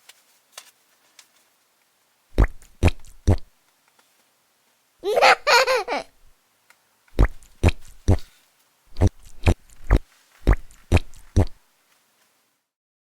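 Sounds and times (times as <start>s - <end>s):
slime squelching pops: 2.4s - 3.5s, 7.2s - 8.2s, 9.0s - 11.6s.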